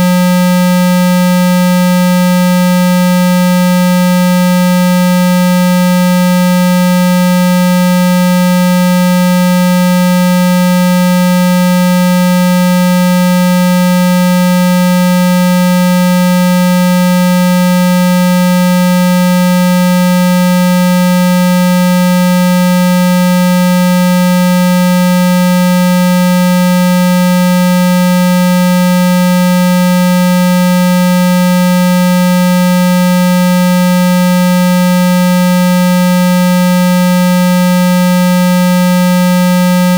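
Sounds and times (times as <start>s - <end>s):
electronic test tone hum: 0.0s - 39.9s.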